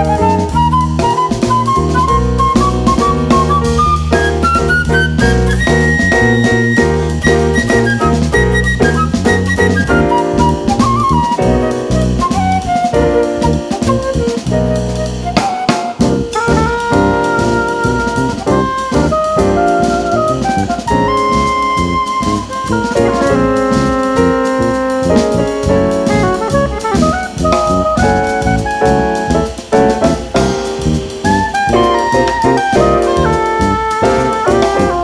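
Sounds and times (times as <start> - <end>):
bass: 0.0 - 35.0
drum kit: 0.0 - 35.0
oboe and flute melody: 0.0 - 35.0
piano: 0.0 - 35.0.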